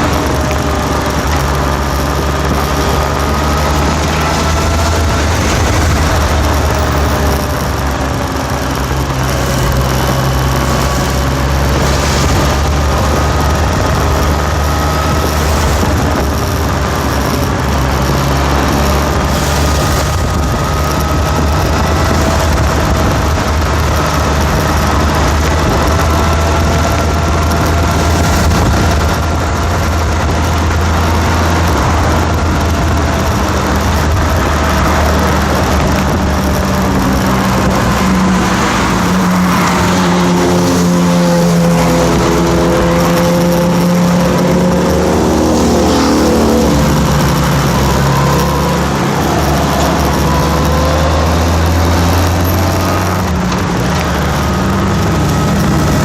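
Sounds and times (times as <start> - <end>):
engine droning: 0.0 - 56.0.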